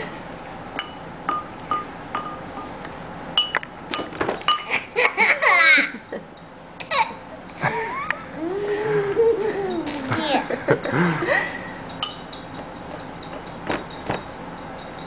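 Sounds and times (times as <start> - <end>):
baby laughing: 8.1 - 10.8
spoon clinking on bowl: 11.7 - 15.0.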